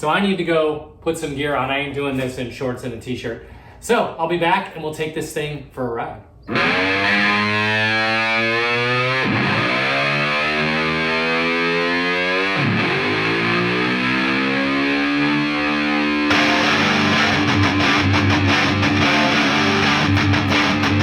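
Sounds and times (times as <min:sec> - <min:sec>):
distorted electric guitar: 0:06.5 - 0:21.0.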